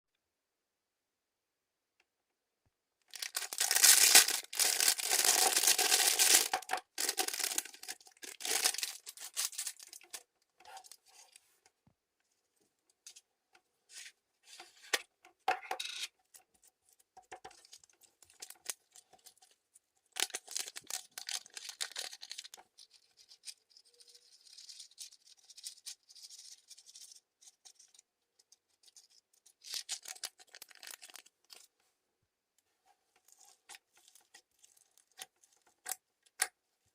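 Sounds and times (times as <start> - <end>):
slime crackling and squishing: 3.2 - 10.2.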